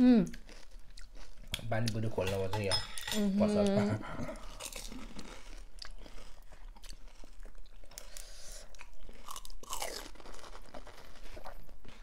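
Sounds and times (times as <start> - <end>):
crisp shells crunching when chewed: 0.3 - 2.1, 4.5 - 12.0.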